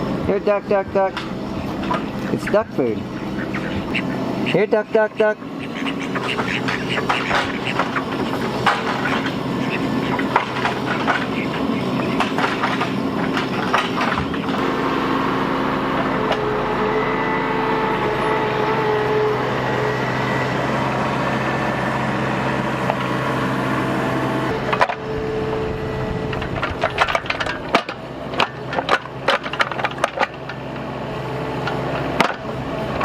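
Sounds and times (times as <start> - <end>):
excavator diesel engine running: 0.0 - 33.0
bucket knocking and scraping: 6.2 - 14.6.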